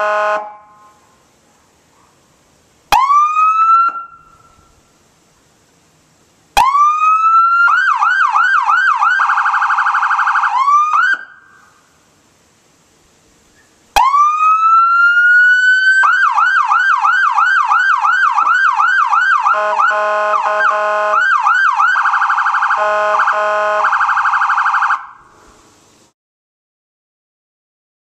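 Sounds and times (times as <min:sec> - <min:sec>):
electronic police siren: 0:02.9 - 0:04.6, 0:06.6 - 0:11.6, 0:14.0 - 0:25.3.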